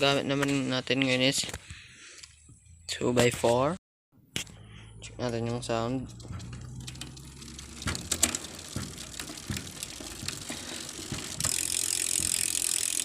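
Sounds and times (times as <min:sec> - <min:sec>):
bicycle freewheel ratcheting: 0:06.1 - 0:13.0.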